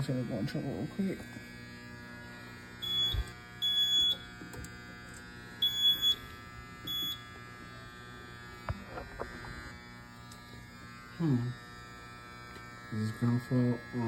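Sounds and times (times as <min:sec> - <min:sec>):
steady electrical hum: 0:00.0 - 0:14.0
alarm panel beeping: 0:02.8 - 0:04.4, 0:05.6 - 0:07.3.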